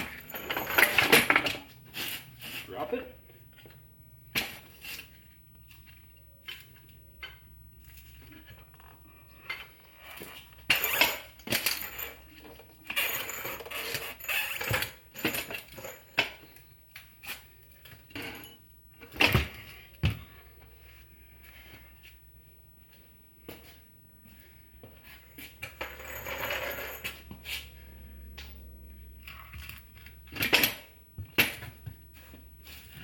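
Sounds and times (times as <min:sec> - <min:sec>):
metal tools clinking and clanking: 0:00.0 - 0:02.2, 0:04.3 - 0:19.8, 0:25.4 - 0:27.6.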